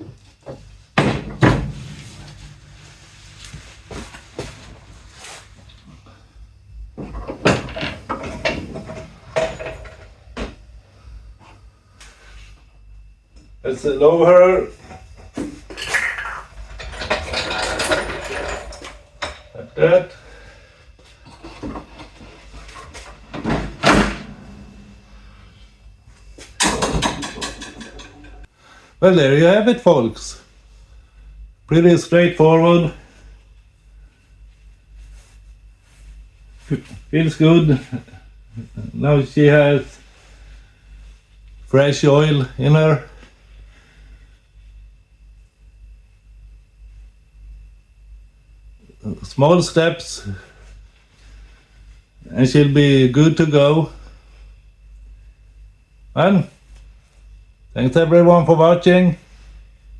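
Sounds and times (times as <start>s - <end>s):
rattling clatter: 1.0s - 4.9s, 7.1s - 10.5s, 15.8s - 20.2s, 21.5s - 25.8s
knocks and clunks of tools: 7.0s - 10.6s.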